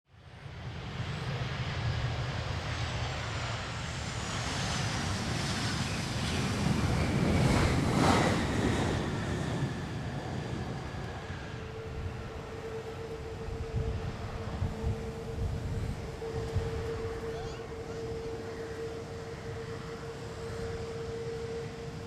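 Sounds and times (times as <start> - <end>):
jet engines roaring past: 0.2 - 22.0
wind buffeting microphone: 4.8 - 22.0.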